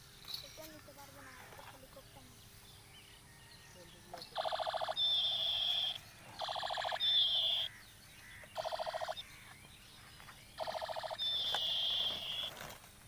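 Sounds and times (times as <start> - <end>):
toy gun rattling burst: 6.4 - 7.7.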